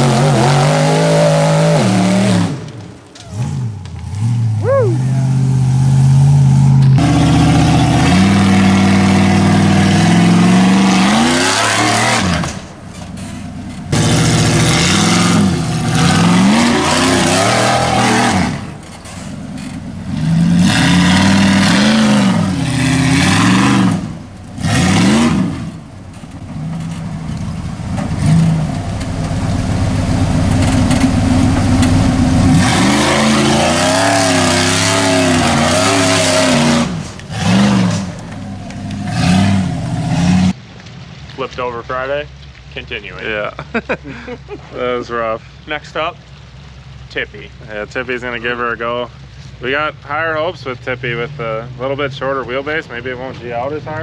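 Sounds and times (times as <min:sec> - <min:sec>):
utv engine revving hard: 0:00.0 - 0:02.7, 0:03.3 - 0:12.6, 0:13.9 - 0:18.8, 0:20.0 - 0:25.8, 0:30.5 - 0:40.6.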